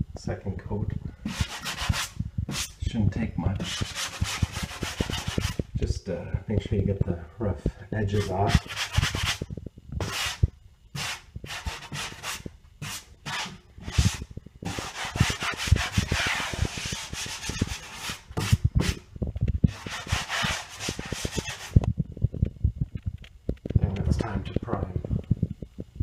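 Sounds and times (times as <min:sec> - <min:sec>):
hand sanding drywall: 0:01.2 - 0:02.8, 0:03.6 - 0:05.7, 0:08.1 - 0:09.4, 0:10.0 - 0:10.4, 0:11.0 - 0:19.0, 0:19.7 - 0:21.8.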